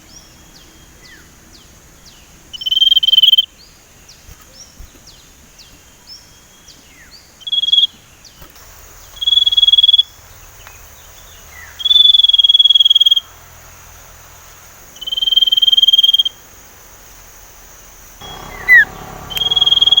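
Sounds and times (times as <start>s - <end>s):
soft bird chirps: 0.0s - 13.4s, 18.2s - 20.0s
faint high insect-like hum: 0.0s - 20.0s
songbird whistling high notes: 18.2s - 20.0s.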